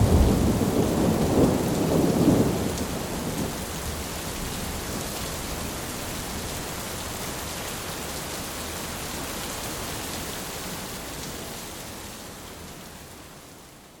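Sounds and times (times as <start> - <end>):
heavy rain pouring: 0.0 - 14.0.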